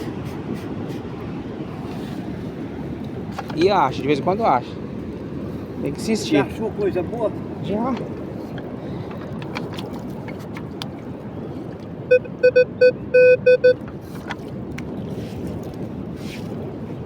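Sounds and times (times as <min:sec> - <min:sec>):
metal detector beeping: 0:12.1 - 0:13.8.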